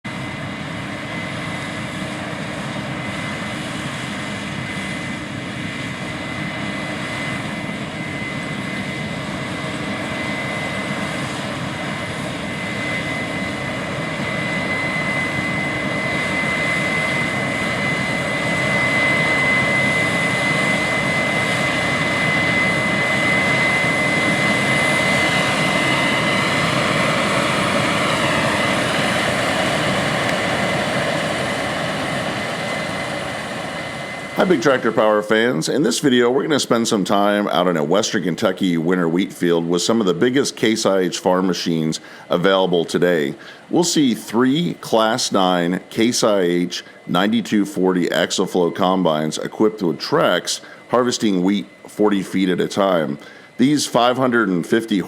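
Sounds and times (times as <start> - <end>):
harvester engine drone: 0.1 - 55.0
high machine whine: 0.1 - 55.0.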